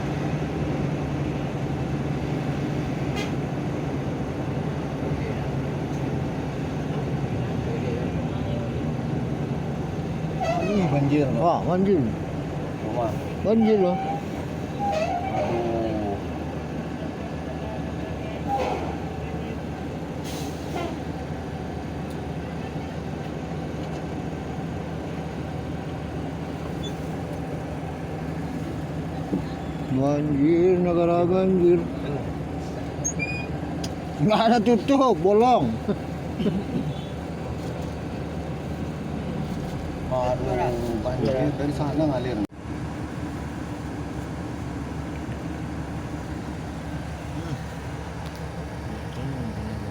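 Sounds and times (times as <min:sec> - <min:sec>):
bus engine humming: 0:00.0 - 0:49.9
road noise: 0:00.0 - 0:49.9.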